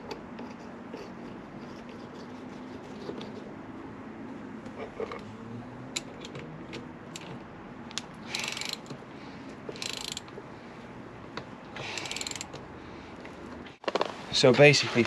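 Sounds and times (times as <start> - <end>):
chain press tool clicking: 7.9 - 8.9, 9.7 - 10.3, 11.8 - 12.6.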